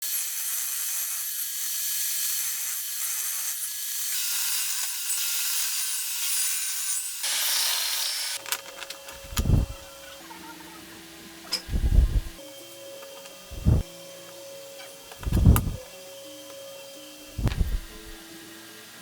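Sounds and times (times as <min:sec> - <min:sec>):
tool scraping wood: 0:11.6 - 0:12.4, 0:15.2 - 0:15.8, 0:17.4 - 0:18.2.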